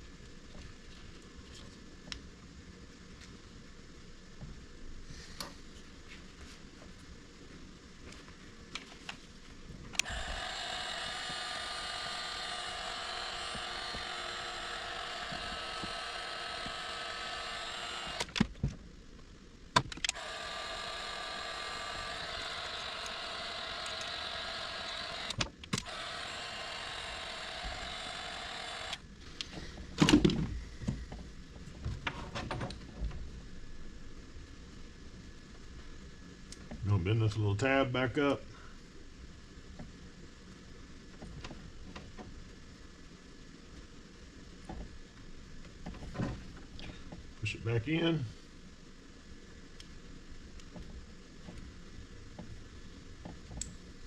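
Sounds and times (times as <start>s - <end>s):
motor switch click: 10.0s - 18.4s, 19.8s - 29.0s
small electric motor whirring: 10.0s - 18.4s, 20.0s - 29.5s.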